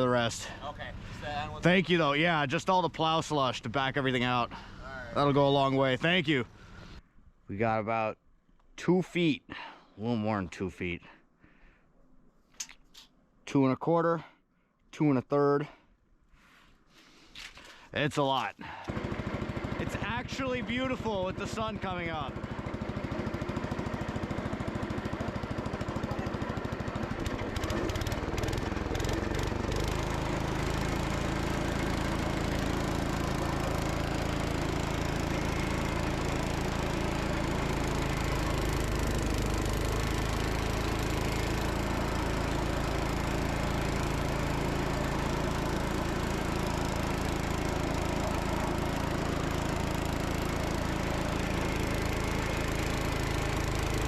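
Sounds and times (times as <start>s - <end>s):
tractor engine running: 18.9s - 54.0s.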